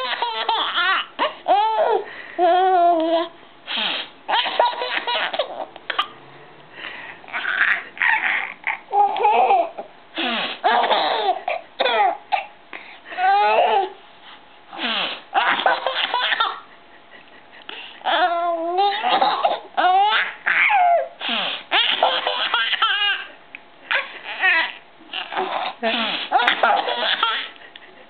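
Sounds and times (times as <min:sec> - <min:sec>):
baby laughing: 0:00.0 - 0:02.1, 0:04.3 - 0:06.2, 0:07.3 - 0:09.9, 0:10.5 - 0:12.5, 0:13.1 - 0:14.0, 0:15.4 - 0:28.0.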